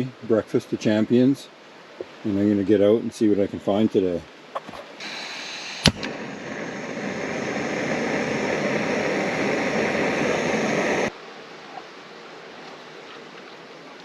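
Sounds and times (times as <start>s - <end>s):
igniter click: 5.0s - 7.0s
gas burner rushing: 5.0s - 11.1s.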